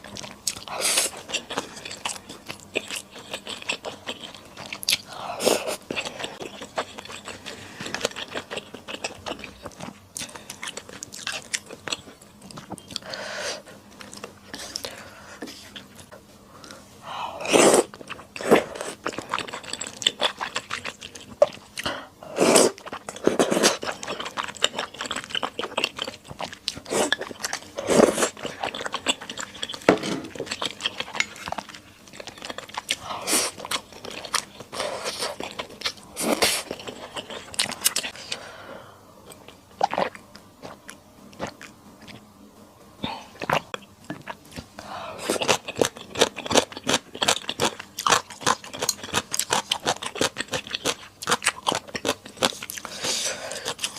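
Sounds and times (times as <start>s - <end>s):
crunchy chewing: 0.0s - 13.2s, 17.5s - 38.5s, 39.2s - 42.3s, 43.4s - 53.9s.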